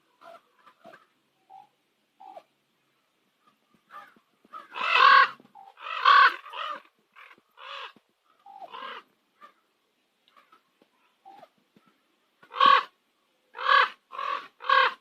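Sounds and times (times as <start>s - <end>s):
raven croaking calls: 0.2s - 2.5s, 3.4s - 9.7s, 12.4s - 15.0s.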